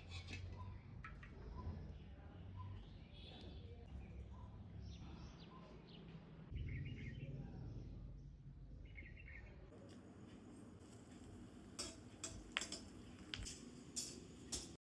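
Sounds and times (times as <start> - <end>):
faint bird chirping: 0.4 - 9.7.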